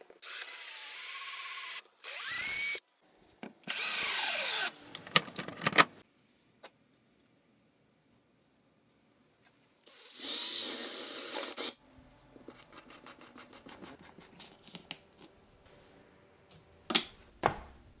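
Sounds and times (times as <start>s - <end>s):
power drill whining: 0.2s - 2.8s, 3.7s - 5.4s.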